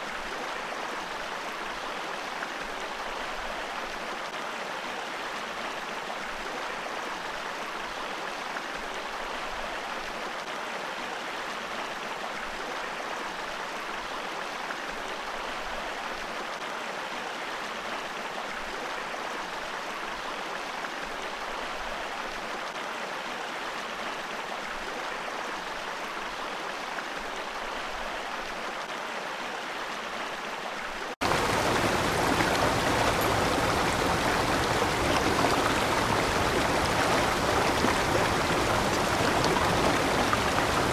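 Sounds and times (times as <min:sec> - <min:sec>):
waterfall pouring over rocks: 0:19.1 - 0:40.9.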